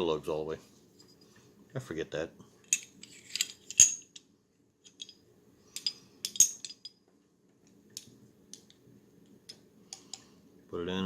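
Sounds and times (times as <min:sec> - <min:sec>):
metal pistol parts clicking: 0:02.6 - 0:04.2.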